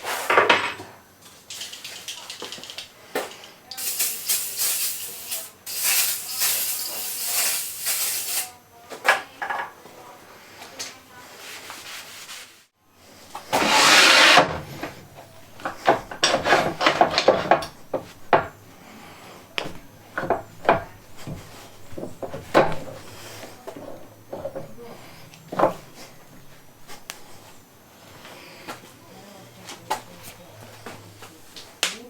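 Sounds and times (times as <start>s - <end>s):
loud scrape: 13.4s - 14.7s.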